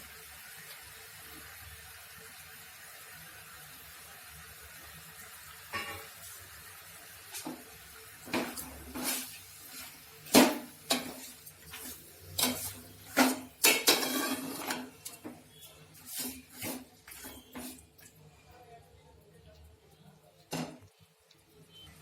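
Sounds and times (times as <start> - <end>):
spoon scraping and knocking pan: 5.7 - 6.2, 7.3 - 17.9.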